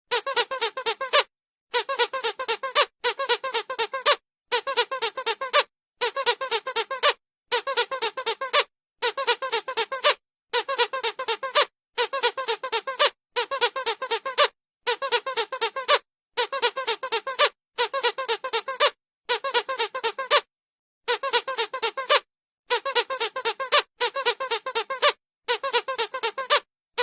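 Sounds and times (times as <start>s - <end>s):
squeaky dog toy squeaking: 0.1s - 20.5s, 21.1s - 27.0s.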